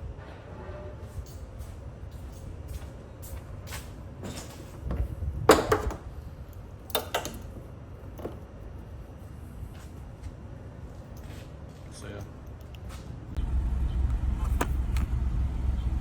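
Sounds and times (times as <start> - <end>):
low rumble: 13.4 - 16.0.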